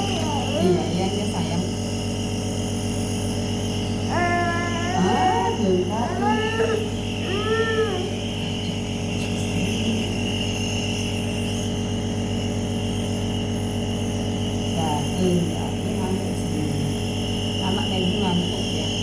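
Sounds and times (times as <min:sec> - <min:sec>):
mechanical drone: 0:00.0 - 0:19.0
young child whimpering: 0:04.1 - 0:08.2.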